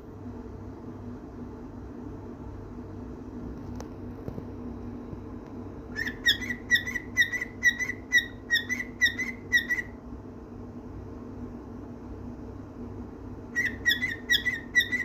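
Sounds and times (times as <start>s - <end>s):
cockatiel whistling chirpy notes: 6.0s - 9.9s, 13.5s - 15.0s.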